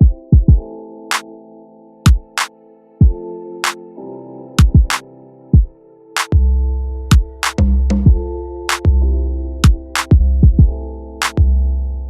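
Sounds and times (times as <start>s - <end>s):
kick drums: 0.0s - 0.6s, 2.1s - 2.3s, 4.6s - 4.9s, 7.1s - 7.4s, 9.6s - 10.8s
synth chords: 0.0s - 12.0s.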